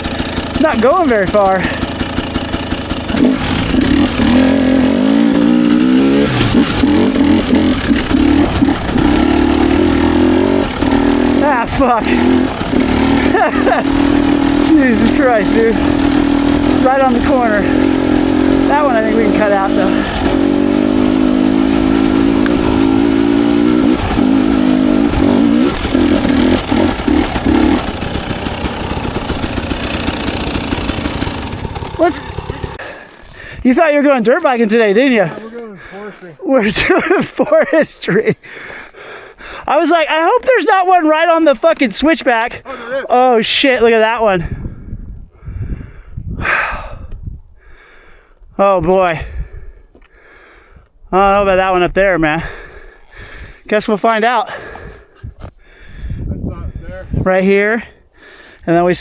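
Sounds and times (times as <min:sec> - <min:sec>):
dirt bike engine revving: 0:00.0 - 0:35.4.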